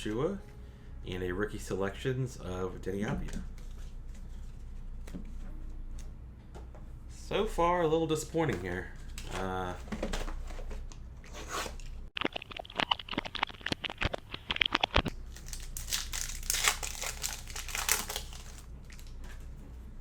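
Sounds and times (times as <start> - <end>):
card packaging torn and crinkled: 14.7 - 19.2.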